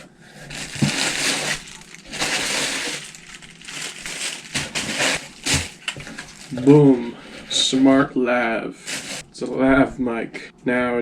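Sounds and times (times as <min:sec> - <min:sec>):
packaging crackling: 0:00.4 - 0:06.8, 0:08.8 - 0:09.2
package tearing: 0:00.5 - 0:06.6.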